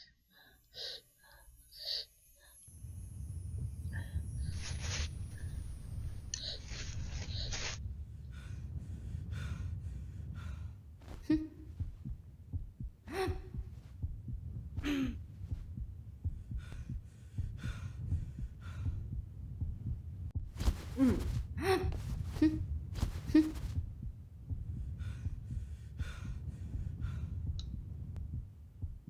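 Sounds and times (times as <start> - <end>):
low throbbing rumble: 2.8 - 7.2, 7.8 - 29.0
heavy breathing and gasps: 14.8 - 15.6, 20.6 - 23.8.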